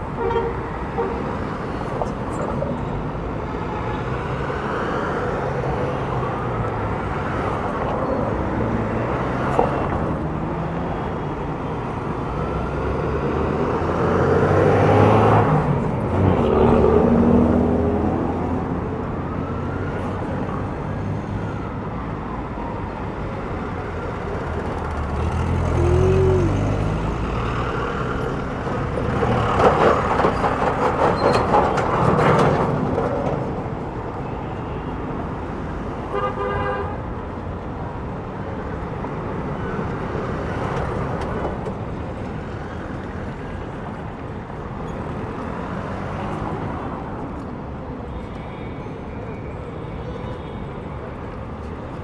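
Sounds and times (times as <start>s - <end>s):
vehicle engine rumble passing: 0.0s - 36.1s
cars passing: 0.0s - 52.0s
car horn toot: 0.1s - 1.5s, 36.1s - 37.0s.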